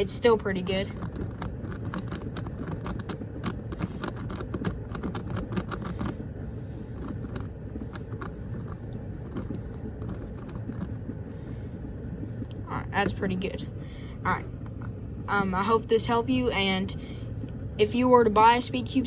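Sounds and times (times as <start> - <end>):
low steady rumble: 0.0 - 19.0
plastic puzzle cube clicking: 0.9 - 6.2, 7.0 - 11.0.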